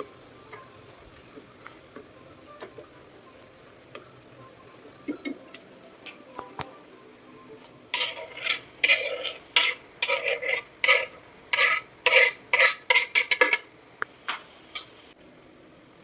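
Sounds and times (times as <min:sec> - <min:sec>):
spoon scraping in a pot: 0:07.9 - 0:13.7.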